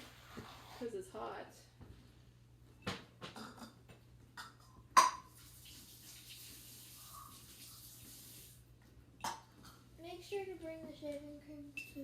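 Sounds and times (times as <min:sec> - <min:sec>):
faint steady hiss: 0:04.9 - 0:12.0.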